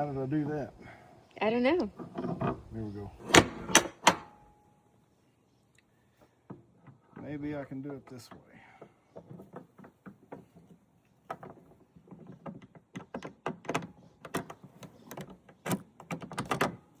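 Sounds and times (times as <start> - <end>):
padlock metal clicks and clanks: 2.0 - 4.5, 11.3 - 17.0.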